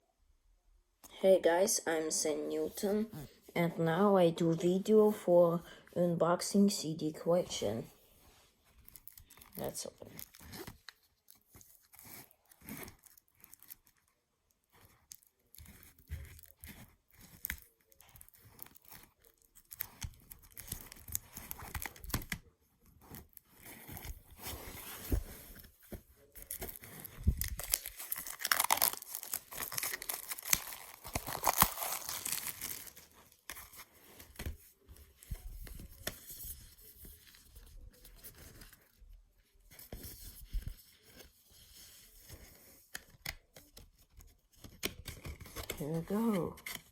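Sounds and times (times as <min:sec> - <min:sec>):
packaging tearing and crinkling: 0:08.8 - 0:14.1, 0:14.7 - 0:24.6, 0:26.2 - 0:34.5.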